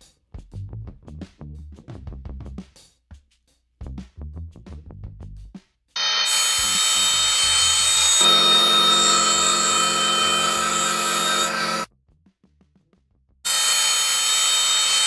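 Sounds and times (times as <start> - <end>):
power tool whining: 6.0 - 11.9, 13.5 - 15.0
low hum: 6.2 - 11.9.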